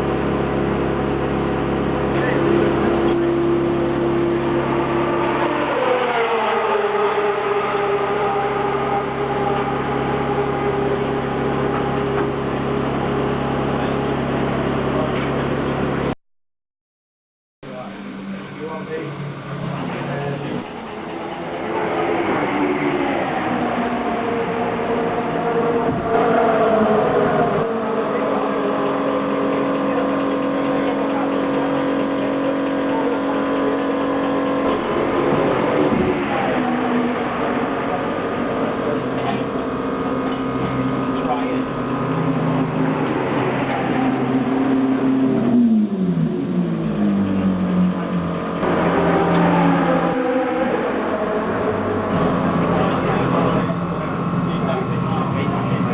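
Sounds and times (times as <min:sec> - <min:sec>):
car engine idling: 0:22.9 - 0:55.9.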